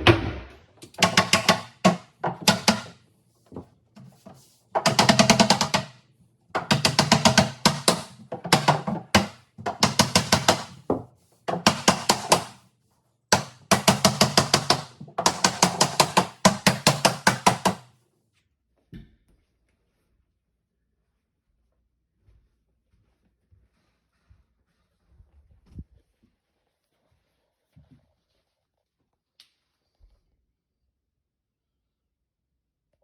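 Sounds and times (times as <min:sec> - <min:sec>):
rapid hammer blows on wood: 0:00.8 - 0:03.0, 0:04.8 - 0:06.0, 0:06.6 - 0:10.9, 0:11.5 - 0:12.6, 0:13.3 - 0:17.8.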